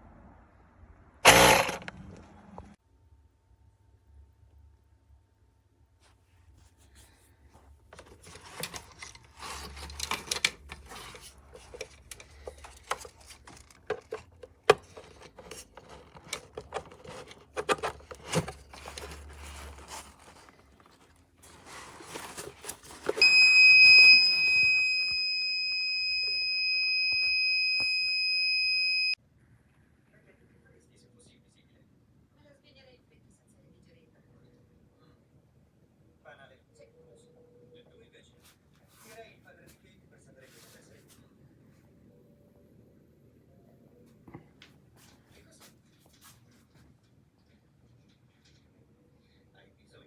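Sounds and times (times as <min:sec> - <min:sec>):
clicks and rustling of handling: 0:06.9 - 0:25.2.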